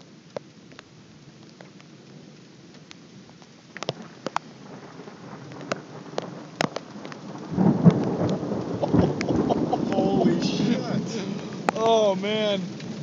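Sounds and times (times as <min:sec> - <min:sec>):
faint rain hiss: 0:00.0 - 0:13.0
raindrops ticking: 0:00.0 - 0:13.0
low rumble of thunder: 0:04.0 - 0:13.0.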